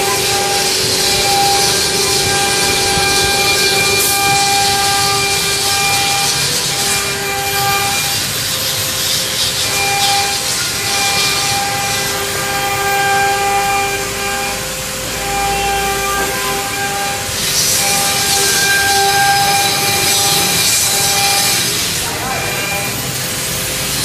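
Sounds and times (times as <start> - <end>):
high spindle whine: 0.0 - 24.0
router cutting hiss: 0.0 - 24.0.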